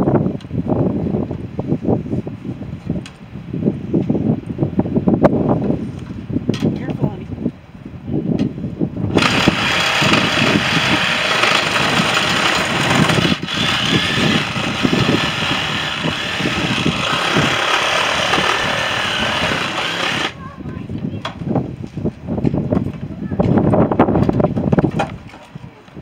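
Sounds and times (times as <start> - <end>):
loud machine engine running: 9.1 - 20.4.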